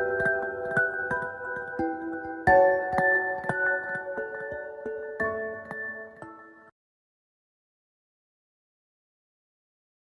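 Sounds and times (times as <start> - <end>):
bell-like mallet ringtone melody: 0.0 - 6.7.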